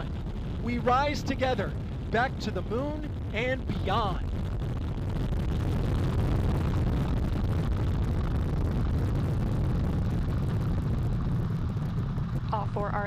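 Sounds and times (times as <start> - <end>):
rocket engines crackling rumble: 0.0 - 13.0.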